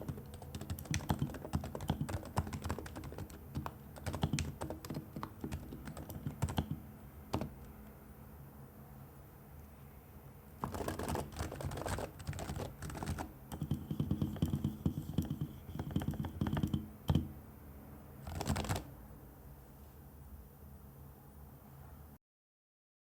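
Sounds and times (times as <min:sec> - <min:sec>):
keyboard typing: 0:00.0 - 0:08.0, 0:10.6 - 0:17.3, 0:18.2 - 0:18.9.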